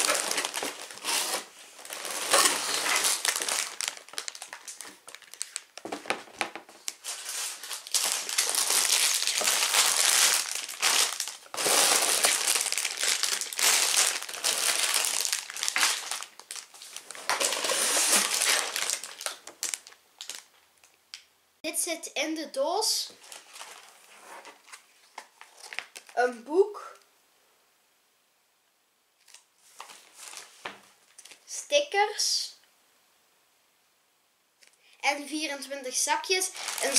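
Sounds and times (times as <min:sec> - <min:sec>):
plastic bags crinkling: 0:00.0 - 0:20.9, 0:23.2 - 0:26.2, 0:29.2 - 0:31.4, 0:36.4 - 0:36.9.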